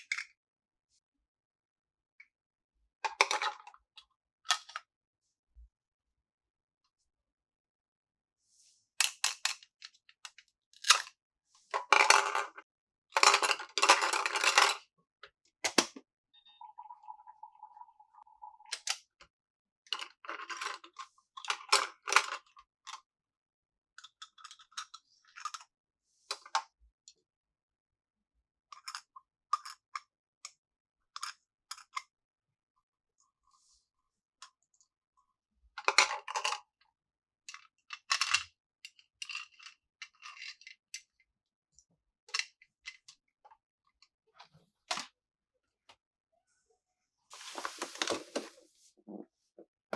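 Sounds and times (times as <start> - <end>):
packaging rustling: 47.3 - 48.7.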